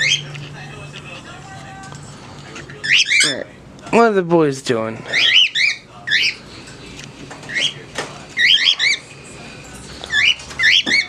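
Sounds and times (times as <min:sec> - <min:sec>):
birds chirping shrilly: 0:00.0 - 0:00.4, 0:02.7 - 0:03.4, 0:05.1 - 0:06.6, 0:07.5 - 0:09.1, 0:10.0 - 0:11.0.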